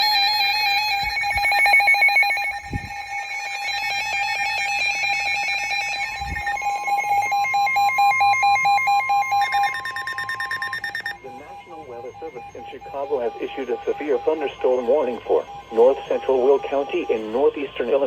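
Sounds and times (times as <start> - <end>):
steady alarm tone: 0.0 - 18.0
warbling alarm tones: 0.0 - 18.0
weather radio alarms beeping: 0.0 - 18.0.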